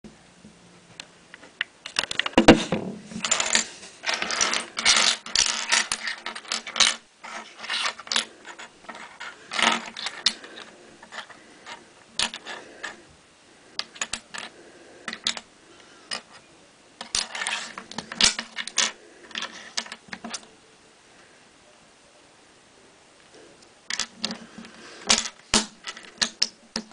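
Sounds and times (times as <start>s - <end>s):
plastic bricks clattering and clicking: 1.4s - 13.0s, 13.8s - 14.5s, 15.1s - 15.5s, 17.0s - 20.4s, 23.9s - 26.9s.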